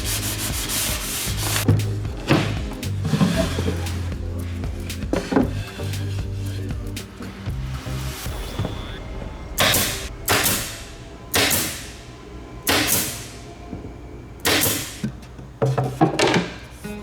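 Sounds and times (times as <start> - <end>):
scraping strokes: 0.0 - 8.4
faint background music: 0.0 - 17.0.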